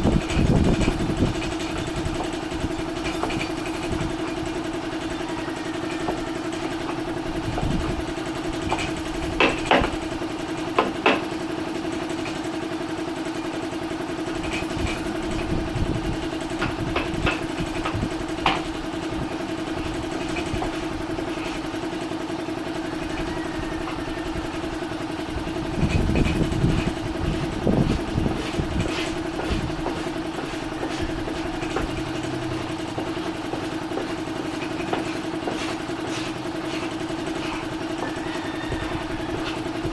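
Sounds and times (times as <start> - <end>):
motor humming: 0.0 - 39.9
sharp knocks and clicks: 8.7 - 10.0, 10.7 - 11.3, 16.6 - 18.7, 28.8 - 36.1.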